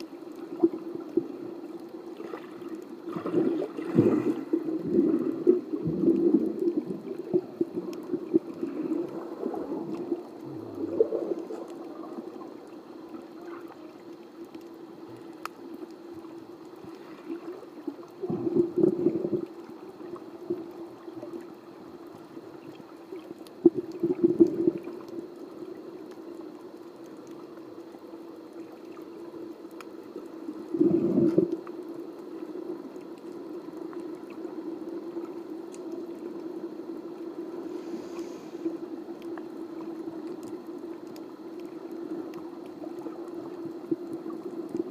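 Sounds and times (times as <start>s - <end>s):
muffled underwater bubbling: 0.0s - 26.3s, 30.2s - 44.9s
low hum: 4.8s - 12.7s.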